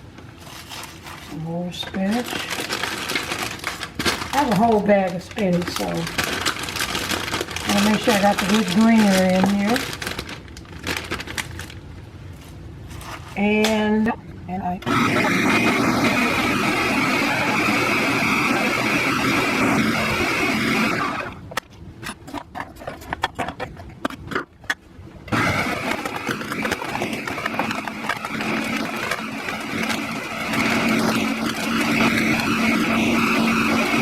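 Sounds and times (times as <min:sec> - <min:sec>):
blender motor running: 0:14.8 - 0:21.4, 0:25.3 - 0:34.0.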